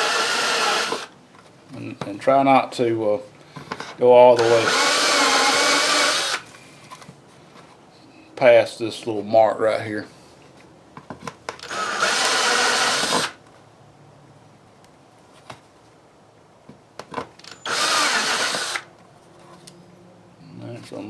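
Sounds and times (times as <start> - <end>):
power drill cutting plastic: 0.0 - 1.1, 4.4 - 6.4, 11.6 - 13.4, 17.6 - 18.9.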